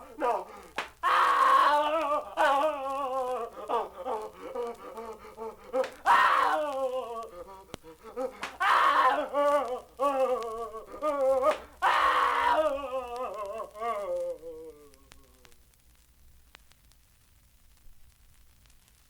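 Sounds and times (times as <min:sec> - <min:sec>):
harsh loud cries: 0:00.0 - 0:15.0
voices moaning and wailing: 0:00.0 - 0:15.6.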